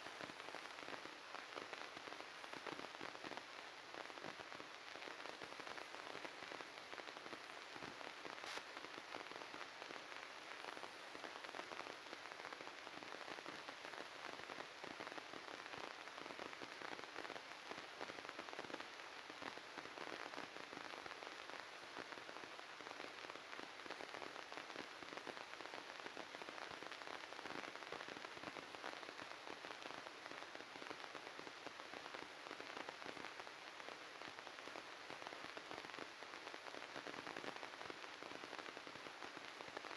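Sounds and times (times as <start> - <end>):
crackling static: 0.0 - 39.9.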